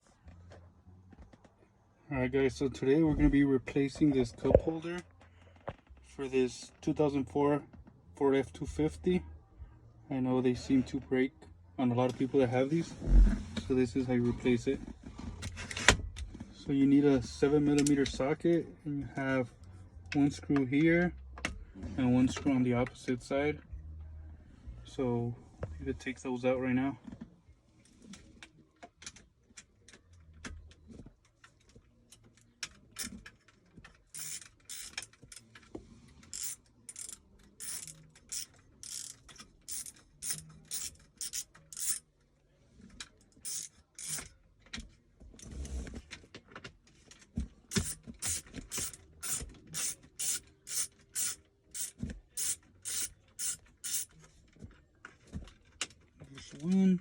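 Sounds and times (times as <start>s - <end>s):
ratchet wrench clicking: 34.1s - 35.4s, 36.3s - 42.0s, 43.4s - 44.3s, 47.7s - 54.1s.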